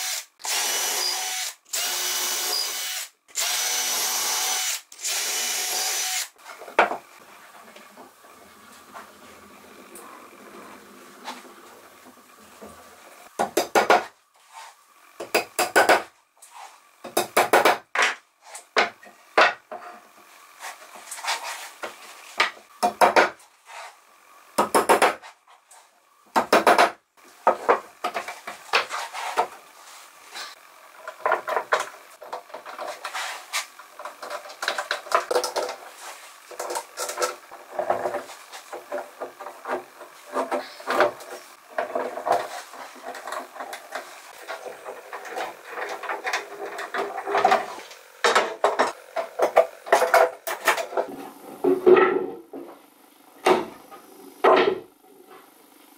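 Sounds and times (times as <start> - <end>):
boards and hand tools clattering: 36.5 - 52.8.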